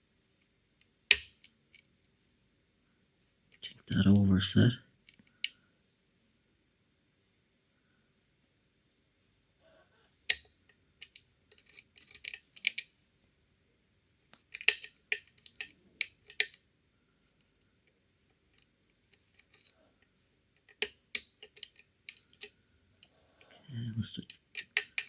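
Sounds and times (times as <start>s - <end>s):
lock picks clicking and scraping: 10.3s - 12.9s, 14.4s - 16.6s, 18.5s - 19.8s, 20.6s - 23.5s, 24.2s - 25.0s.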